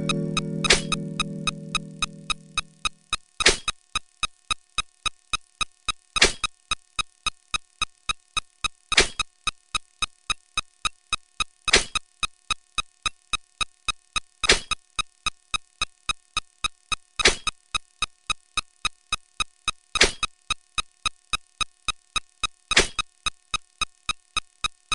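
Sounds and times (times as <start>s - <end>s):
longer louder sound effect: 0.0s - 2.8s
short electronic ticks: 0.0s - 24.9s.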